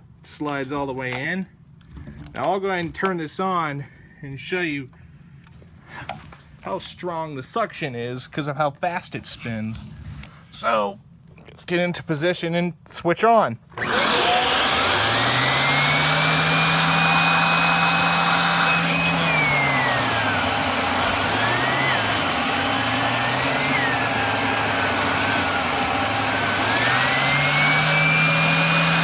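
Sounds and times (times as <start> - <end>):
vacuum cleaner motor whine: 13.8 - 29.0.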